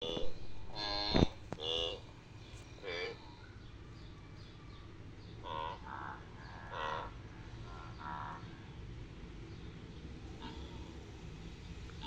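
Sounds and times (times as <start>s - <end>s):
wildebeest grunting calls: 0.0s - 2.1s, 2.8s - 3.2s, 5.4s - 8.7s, 10.3s - 11.1s.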